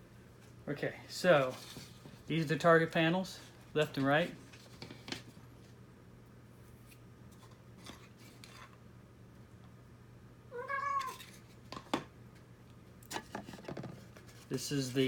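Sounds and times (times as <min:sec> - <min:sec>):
cat meowing: 0:10.5 - 0:11.2.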